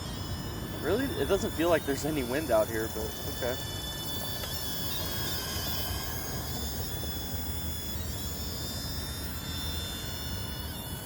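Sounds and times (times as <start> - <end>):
toy drone propellers whining: 0.0 - 11.0.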